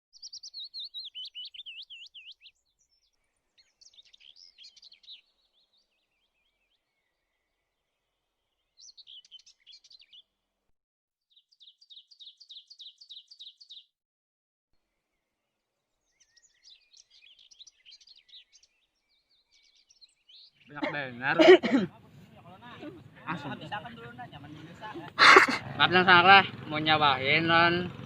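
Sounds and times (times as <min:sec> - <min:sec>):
bird singing: 0:00.2 - 0:10.3, 0:11.3 - 0:13.9, 0:14.8 - 0:21.4.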